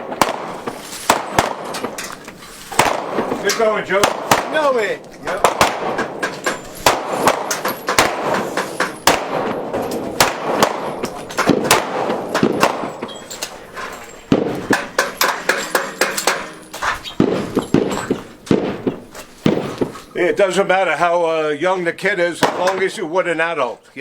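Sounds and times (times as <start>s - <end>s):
gunshots with echo: 0.0s - 2.0s, 2.7s - 13.1s, 14.3s - 16.5s, 17.2s - 20.0s, 22.4s - 23.0s.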